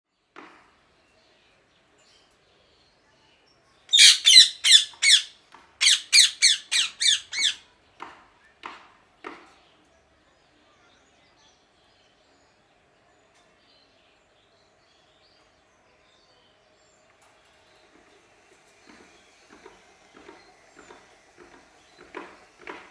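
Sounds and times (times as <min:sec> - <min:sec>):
parrot shrill calls: 0:03.9 - 0:07.6.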